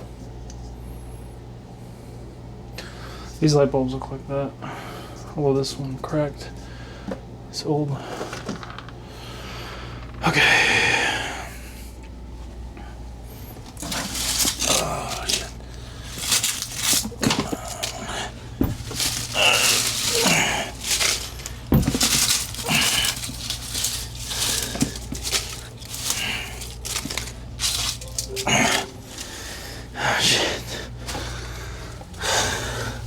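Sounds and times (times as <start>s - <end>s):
steady low hum: 9.0s - 33.0s
rustling and crinkling: 13.3s - 30.0s
objects clattering: 13.6s - 29.9s.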